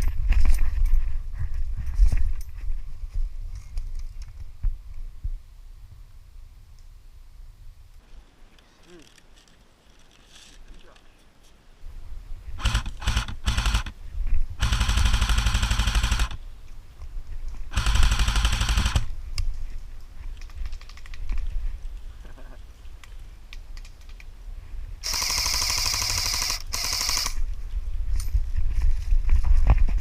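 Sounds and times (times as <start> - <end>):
airsoft gun firing bursts: 12.6 - 14.0, 14.6 - 16.4, 17.7 - 19.1, 25.0 - 27.4.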